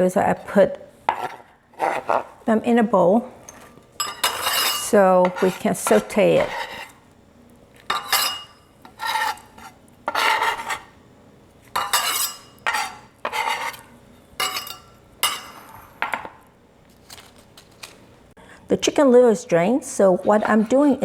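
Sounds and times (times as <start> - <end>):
knife scraping cutting board: 1.1 - 2.5, 3.3 - 7.0, 7.8 - 11.0, 11.7 - 16.0.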